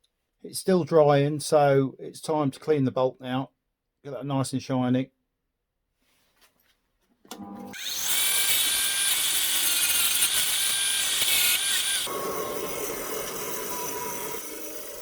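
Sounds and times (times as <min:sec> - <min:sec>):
power tool whining on steel: 0:07.4 - 0:15.0.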